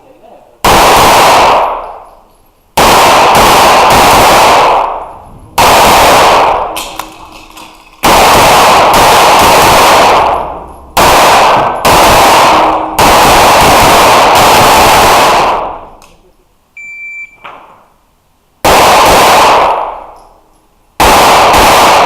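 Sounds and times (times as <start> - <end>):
pistol shots echoing indoors: 0.6 - 2.2, 2.8 - 16.0, 18.6 - 20.3, 21.0 - 22.0.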